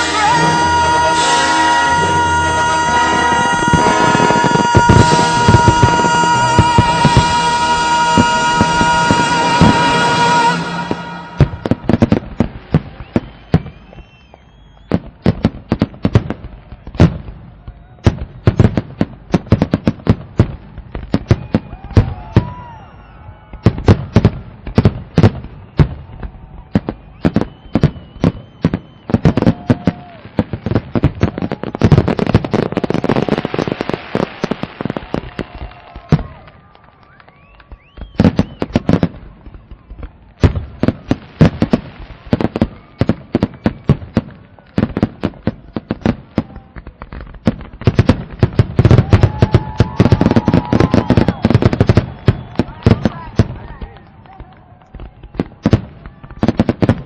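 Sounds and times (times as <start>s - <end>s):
firework rising whistle: 0.0s - 15.5s, 21.1s - 44.2s, 48.8s - 54.2s
fireworks bangs and crackles: 0.0s - 57.0s.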